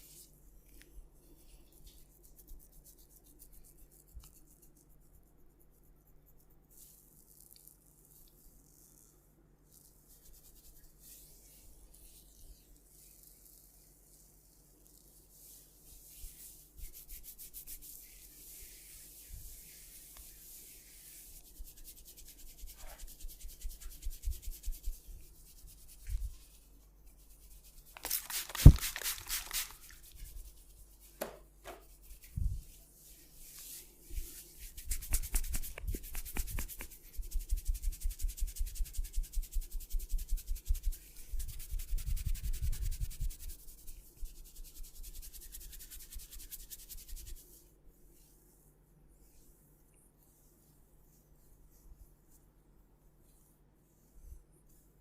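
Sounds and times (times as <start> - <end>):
hands rubbing skin: 0.0 - 9.0, 9.7 - 47.6
quick rhythmic pats: 27.9 - 29.9, 34.7 - 43.5.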